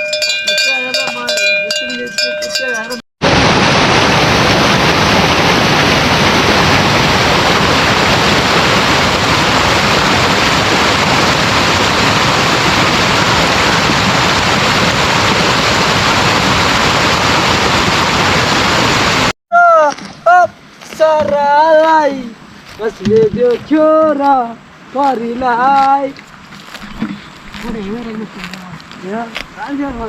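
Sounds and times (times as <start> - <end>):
rush of flowing water: 3.2 - 19.3, 24.8 - 30.0.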